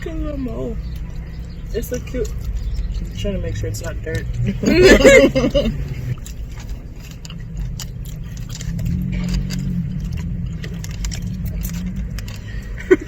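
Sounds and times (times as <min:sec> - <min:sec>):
low car cabin hum: 0:00.0 - 0:13.0
chewing clicks and smacks: 0:00.4 - 0:05.1, 0:05.7 - 0:13.0.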